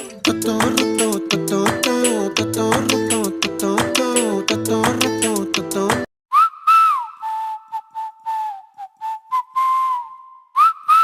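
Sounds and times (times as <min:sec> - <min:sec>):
background music: 0:00.0 - 0:06.1
person whistling a tune: 0:06.3 - 0:11.0.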